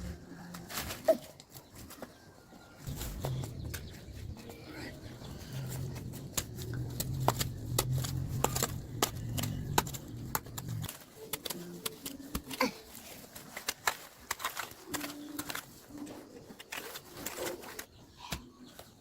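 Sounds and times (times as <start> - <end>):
low hum: 2.8 - 10.9.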